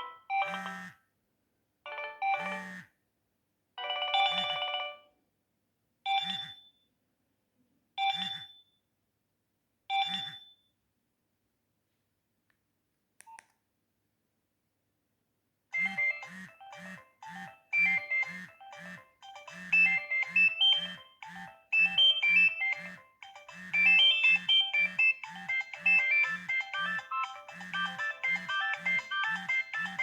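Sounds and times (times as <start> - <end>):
polyphonic ringtone melody: 0.0 - 0.9, 1.9 - 2.8, 15.8 - 30.0.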